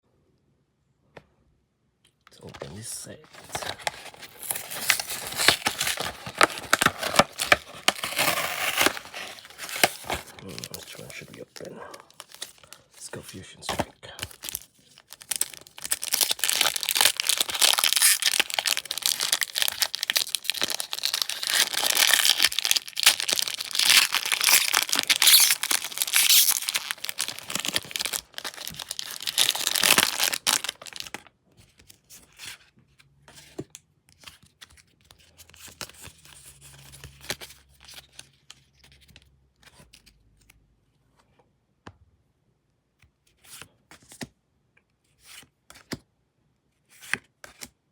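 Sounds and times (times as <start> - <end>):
card packaging crinkling and tearing: 2.4 - 32.6.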